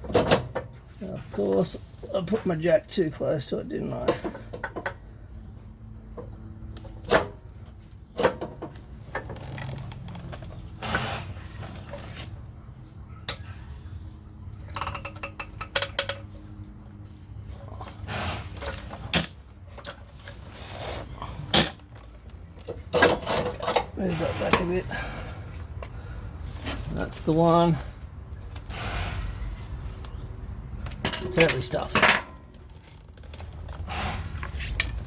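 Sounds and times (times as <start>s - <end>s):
metal tools clinking: 30.8s - 33.8s.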